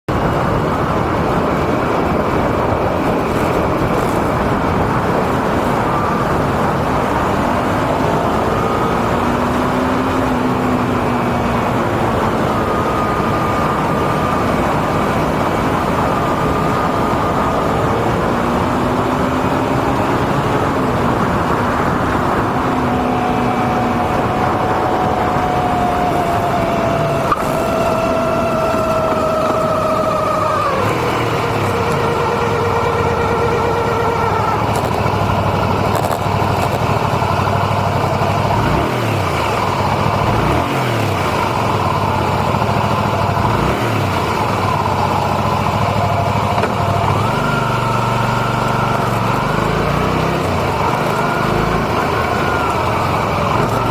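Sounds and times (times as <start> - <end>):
motorcycle engine running: 0.1 - 53.9
thin whining tone: 0.6 - 38.5.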